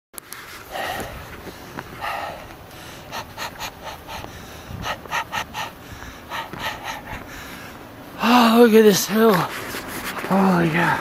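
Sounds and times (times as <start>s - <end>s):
man panting hard: 0.5s - 8.6s.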